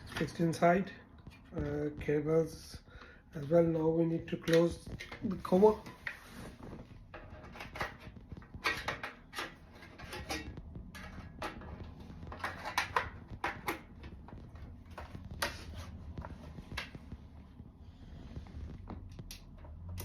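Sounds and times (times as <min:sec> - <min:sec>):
sheet metal clicks and knocks: 0:07.1 - 0:14.0.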